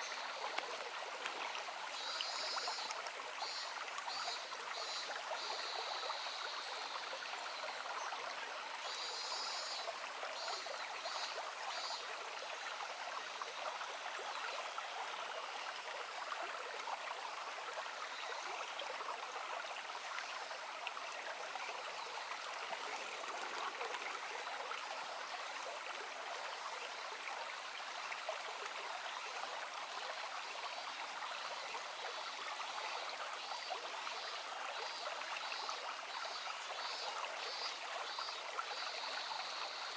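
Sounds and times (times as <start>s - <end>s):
stream babbling over rocks: 19.1s - 31.6s.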